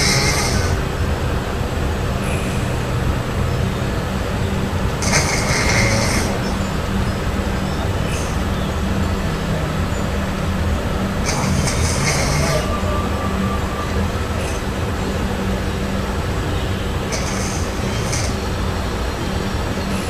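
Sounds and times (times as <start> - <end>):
cat snoring: 0.0 - 0.8, 5.0 - 6.6, 11.2 - 13.0, 17.1 - 18.4.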